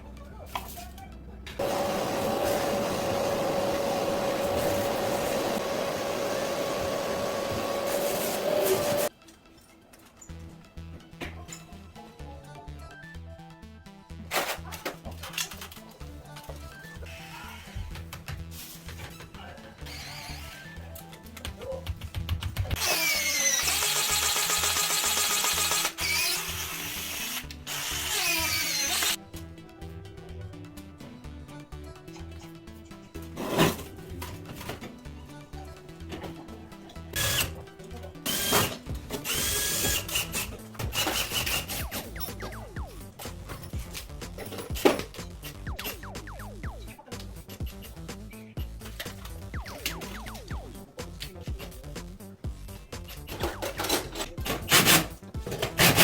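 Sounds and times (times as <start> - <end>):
background music: 0.0 - 56.0
electric machine whining: 1.6 - 9.1
electric power drill running: 1.6 - 9.1, 22.8 - 29.2, 38.3 - 41.9.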